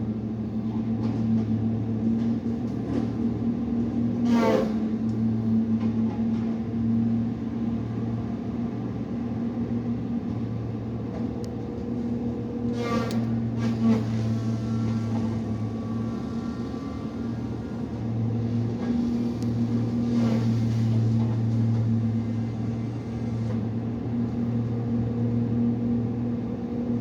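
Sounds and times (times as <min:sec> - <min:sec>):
machine engine running: 0:13.6 - 0:20.2.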